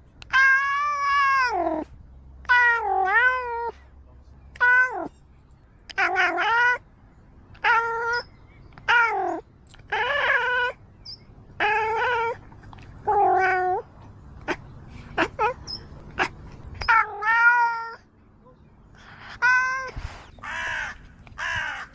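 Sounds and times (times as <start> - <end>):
cat meowing and yowling: 0.3 - 1.8, 2.5 - 3.8, 4.6 - 5.1, 5.9 - 6.8, 7.6 - 10.8, 11.6 - 12.4, 13.0 - 13.8, 16.2 - 18.0, 19.3 - 20.1.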